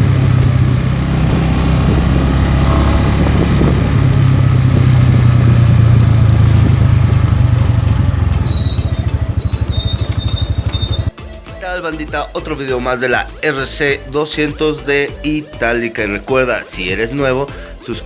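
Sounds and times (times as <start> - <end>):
motorcycle engine running: 0.0 - 11.2.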